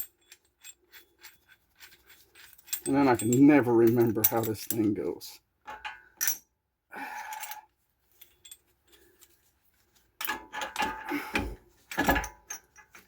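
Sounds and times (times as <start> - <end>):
metal hand tools clinking: 0.0 - 6.5.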